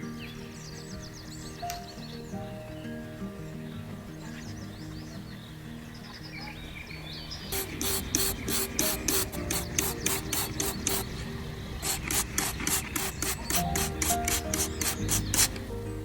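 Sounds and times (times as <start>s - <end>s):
soft background music: 0.0s - 16.0s
quick rubbing strokes: 7.5s - 15.6s.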